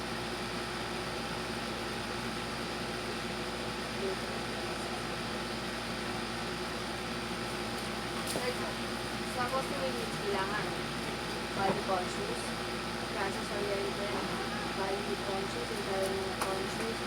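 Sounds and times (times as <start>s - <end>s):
background hum and hiss: 0.2s - 17.0s
faint voice: 13.2s - 15.6s.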